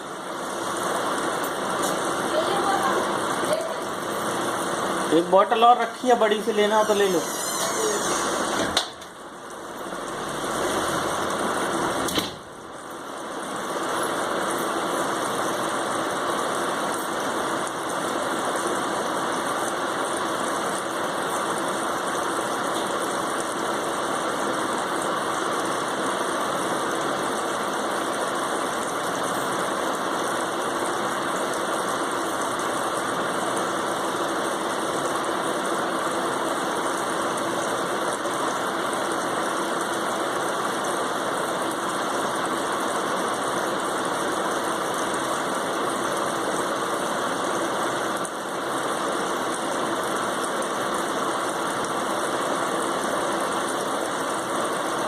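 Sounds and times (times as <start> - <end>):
machine running: 1.4 - 15.4.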